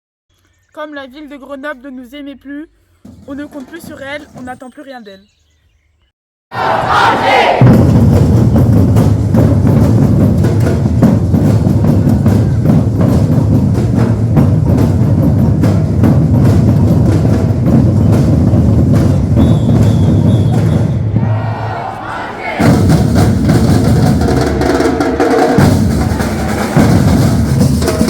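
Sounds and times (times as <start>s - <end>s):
percussion ensemble drumming: 6.6s - 28.0s.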